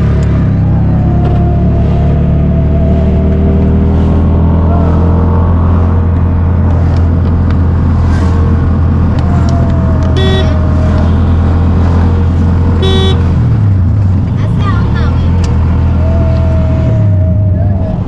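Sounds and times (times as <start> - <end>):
short horn beeps: 12.8 - 13.3.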